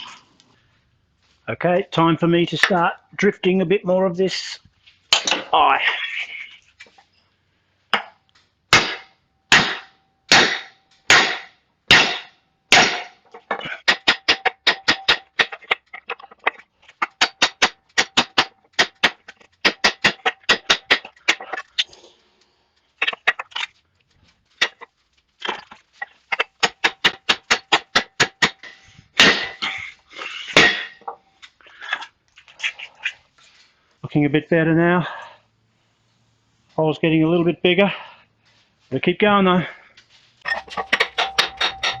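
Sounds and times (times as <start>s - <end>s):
hammer striking hot steel: 8.7s - 15.5s, 40.5s - 42.0s.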